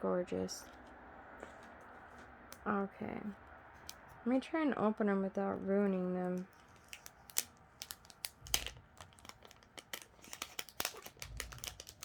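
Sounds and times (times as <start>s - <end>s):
plastic packaging crinkling: 6.2s - 12.0s.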